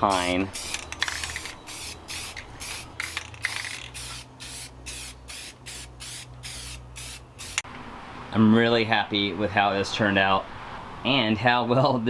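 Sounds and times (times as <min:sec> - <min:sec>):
spray paint can hissing: 0:00.0 - 0:07.7.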